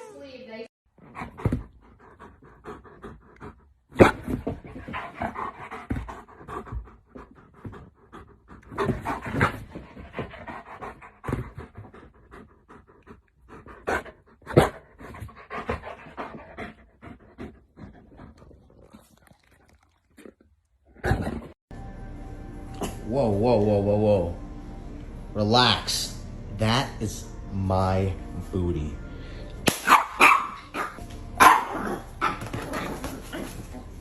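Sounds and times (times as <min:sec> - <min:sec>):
dog panting: 0:01.0 - 0:19.4.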